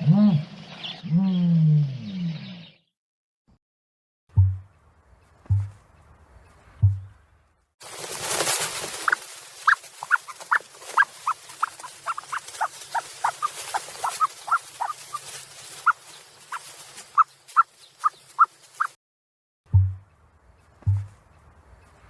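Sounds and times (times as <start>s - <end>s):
animal squeaky chirps: 9.1s - 19.0s.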